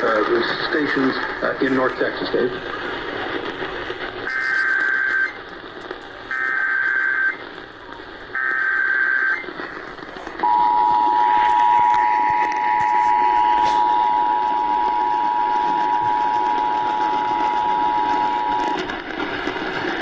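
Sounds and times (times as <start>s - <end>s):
screeching digital data tones: 4.2s - 5.4s, 10.4s - 18.9s
two-tone attention signal: 10.4s - 18.9s.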